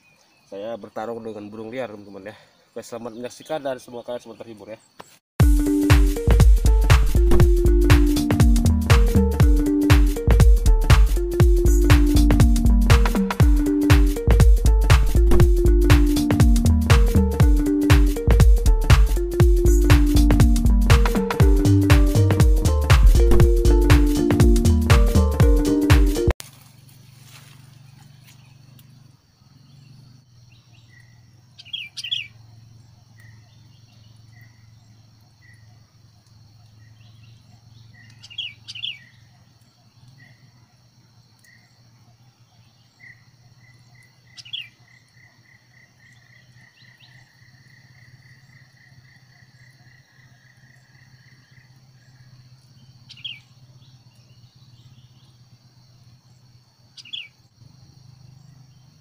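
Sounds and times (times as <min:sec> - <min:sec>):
high insect drone: 0:26.5 - 0:39.2, 0:43.0 - 0:59.0
bulbul calls: 0:30.5 - 0:32.4, 0:38.0 - 0:39.2, 0:57.0 - 0:57.4.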